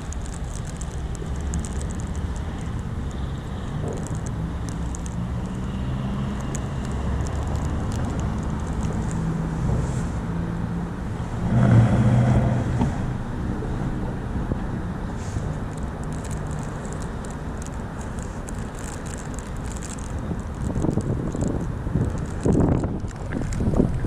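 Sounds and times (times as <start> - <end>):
low rumble of car engines: 0.0 - 24.0
vehicle passing by: 1.4 - 15.6.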